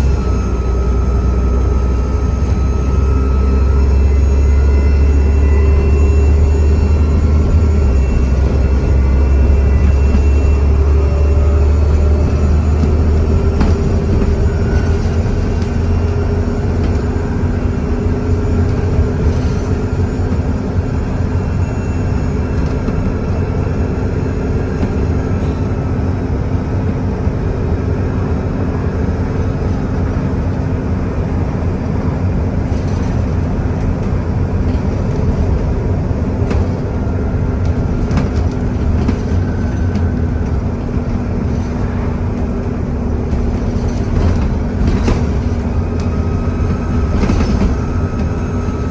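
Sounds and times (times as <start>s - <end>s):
turbocharger whistle: 0.0s - 24.0s
bus diesel engine droning: 0.0s - 48.9s.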